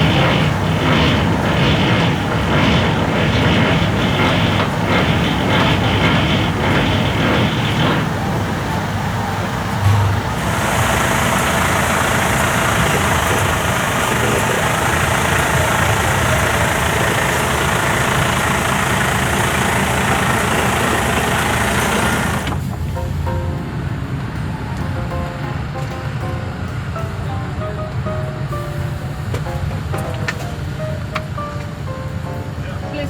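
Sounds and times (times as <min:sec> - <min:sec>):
rushing hiss: 0:00.0 - 0:22.8
truck diesel engine running: 0:00.0 - 0:27.3.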